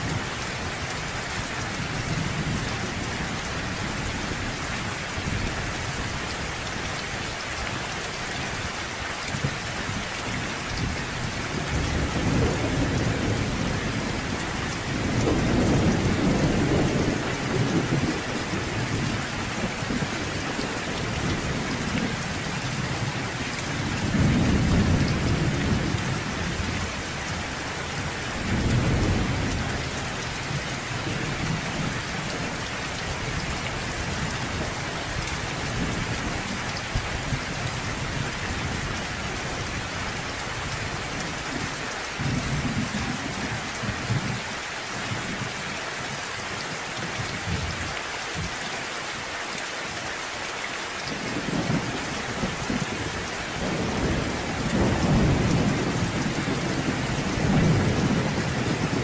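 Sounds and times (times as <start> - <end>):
heavy rain: 0.0 - 59.0
thunder rumbling: 10.6 - 39.8, 51.3 - 59.0.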